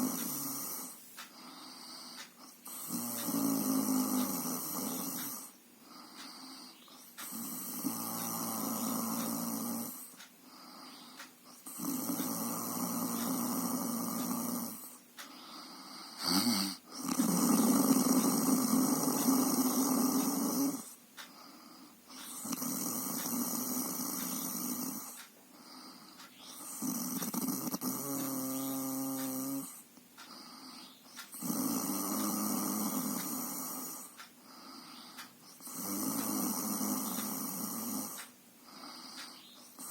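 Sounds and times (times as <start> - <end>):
person snoring: 0.0 - 39.9.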